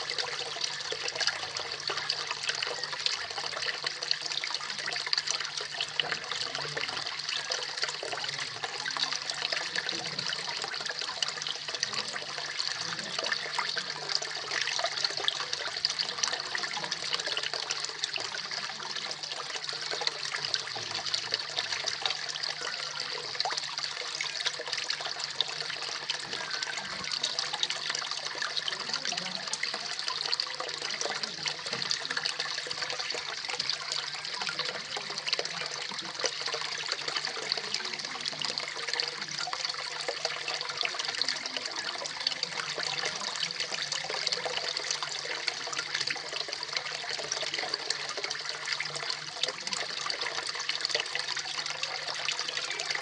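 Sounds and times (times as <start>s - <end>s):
waterfall splashing into pond: 0.0s - 53.0s.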